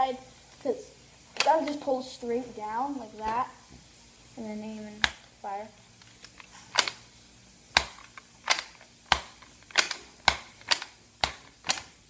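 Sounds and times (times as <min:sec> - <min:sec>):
toy blaster plastic clicks: 0:01.4 - 0:01.8, 0:06.2 - 0:07.0, 0:07.7 - 0:12.0.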